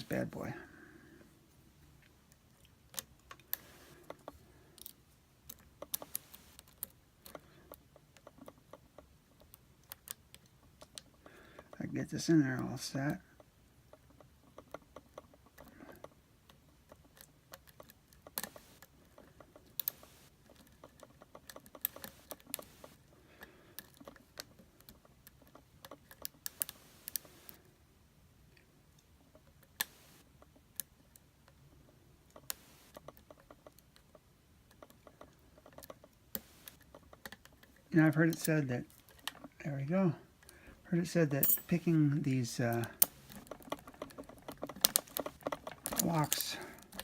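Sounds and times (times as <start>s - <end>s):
lock pick clicking and scraping: 2.9s - 11.8s, 13.9s - 23.0s, 23.8s - 27.6s, 42.7s - 47.0s.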